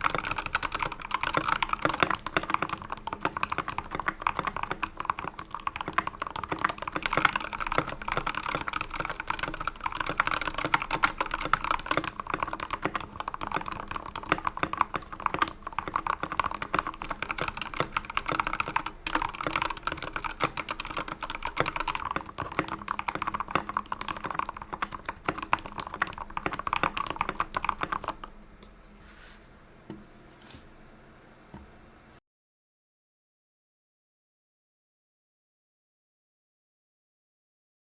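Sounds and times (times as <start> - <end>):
mechanical keyboard typing: 0.0 - 28.3.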